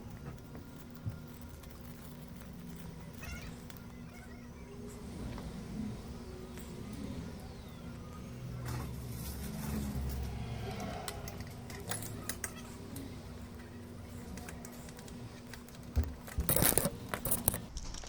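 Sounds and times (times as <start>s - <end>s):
small hard objects clicking: 0.0s - 4.4s, 14.3s - 18.0s
clicking and rattling: 0.0s - 5.6s, 6.5s - 18.0s
low steady hum: 0.0s - 17.7s.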